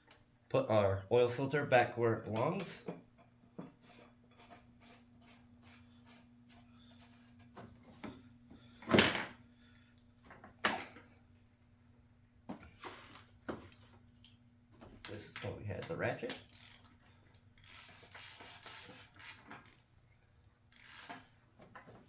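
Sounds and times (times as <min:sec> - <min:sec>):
hand ratchet clicking: 0:16.3 - 0:19.9, 0:20.7 - 0:21.3.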